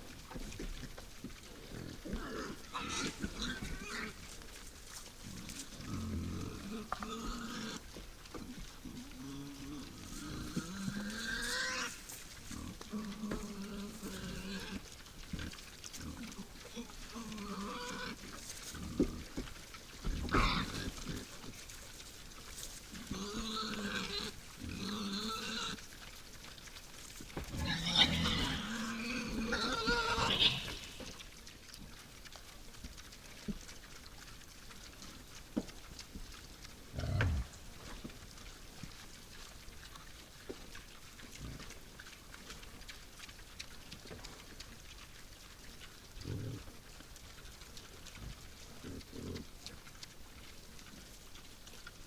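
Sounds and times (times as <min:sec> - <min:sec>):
wild boars grunting: 0:01.4 - 0:04.6, 0:05.2 - 0:21.6, 0:27.4 - 0:31.2, 0:36.9 - 0:37.8, 0:46.2 - 0:46.8, 0:48.2 - 0:49.6.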